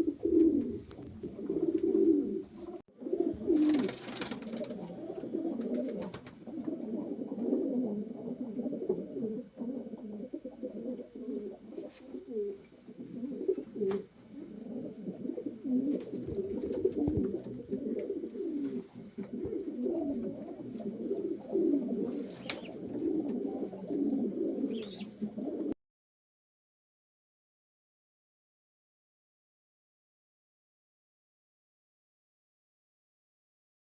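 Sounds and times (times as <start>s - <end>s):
pigeons cooing: 0.0s - 25.8s.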